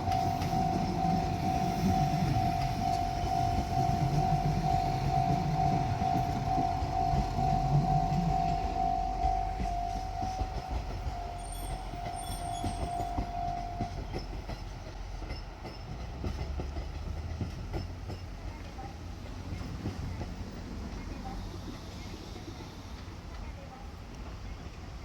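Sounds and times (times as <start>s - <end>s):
steady high tone: 0.0s - 14.2s
low engine rumble: 0.0s - 15.6s
train wheels clicking on rails: 0.0s - 25.0s.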